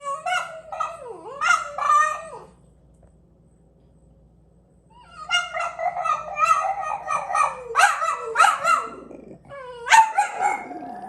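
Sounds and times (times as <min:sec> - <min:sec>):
dogs howling: 0:00.0 - 0:02.6, 0:05.0 - 0:11.0.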